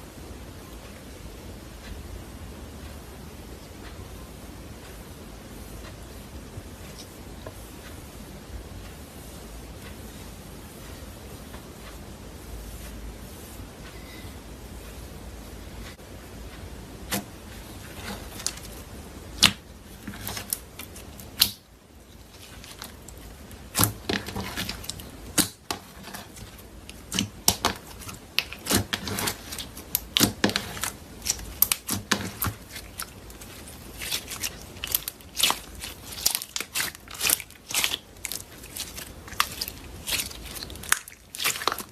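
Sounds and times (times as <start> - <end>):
slime squishing with sticky pops: 17.1 - 41.9.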